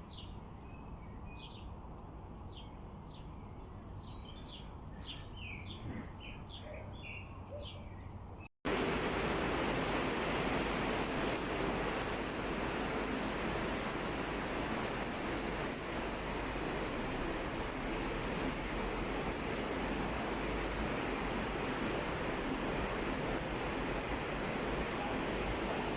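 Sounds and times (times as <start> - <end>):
birds chirping: 2.4 - 8.5
sea surf rushing: 8.7 - 25.9.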